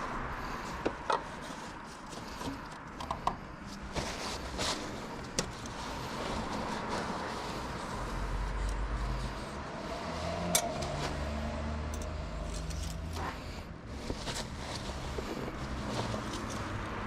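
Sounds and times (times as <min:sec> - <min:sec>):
tools and parts clicking: 0:02.4 - 0:03.4, 0:10.5 - 0:11.0, 0:11.9 - 0:13.2.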